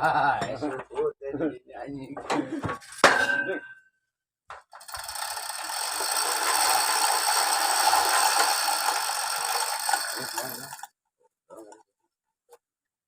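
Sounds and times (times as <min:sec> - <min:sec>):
drilling machine rushing with rattle: 0:04.7 - 0:10.9.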